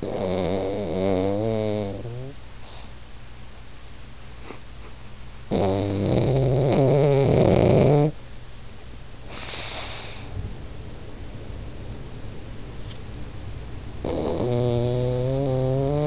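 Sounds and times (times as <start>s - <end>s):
dog snoring: 0.0s - 2.9s, 5.5s - 8.2s, 14.0s - 16.0s
soft hissing breath: 2.2s - 3.1s, 9.2s - 10.4s.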